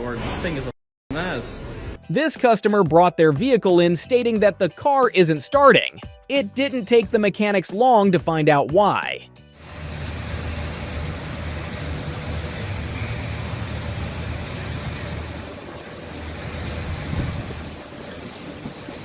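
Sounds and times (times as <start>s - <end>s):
hiss: 9.6s - 19.0s
vehicle engine rumbling: 9.6s - 19.0s.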